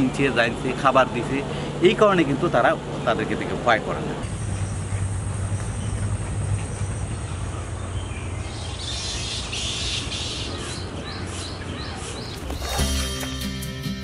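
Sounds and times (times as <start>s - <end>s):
birds calling in a colony: 4.3s - 13.1s.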